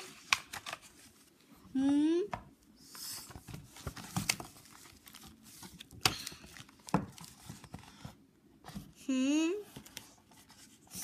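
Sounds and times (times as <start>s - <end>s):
paper rustling: 0.0s - 1.4s, 2.9s - 8.8s.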